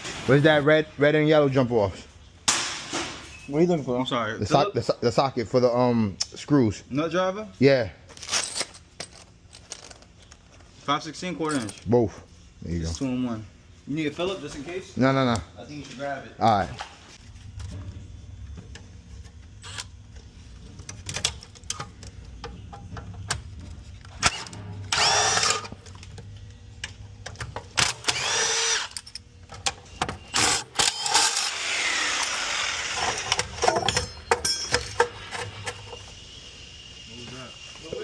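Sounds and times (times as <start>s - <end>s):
power drill spinning: 0.0s - 0.6s, 24.2s - 25.7s, 27.9s - 29.0s, 30.3s - 33.5s.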